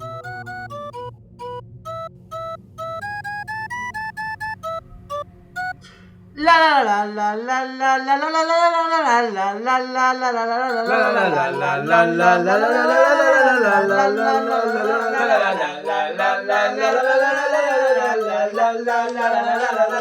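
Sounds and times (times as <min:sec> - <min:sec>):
men singing a sliding melody: 0:10.7 - 0:20.0.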